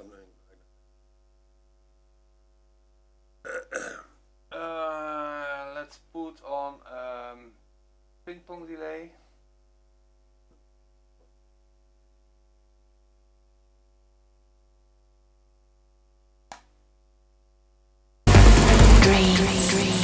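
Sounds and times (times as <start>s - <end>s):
faint mains hum: 0.0s - 20.0s
click: 16.5s - 16.7s
trance music with heavy bass: 18.3s - 20.0s.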